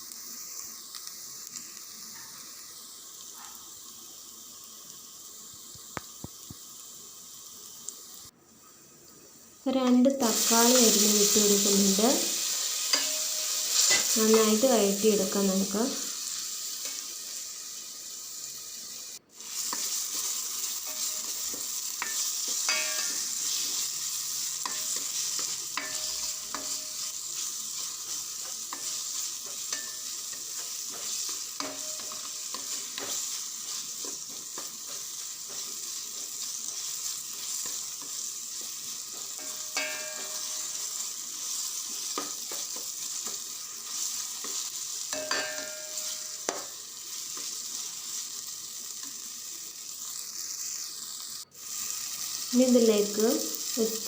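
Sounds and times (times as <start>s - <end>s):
vegetables sizzling in hot oil: 0.0s - 54.0s
spoon tapping and scraping pan: 12.9s - 14.6s, 19.6s - 23.8s, 24.5s - 27.2s, 27.8s - 47.6s.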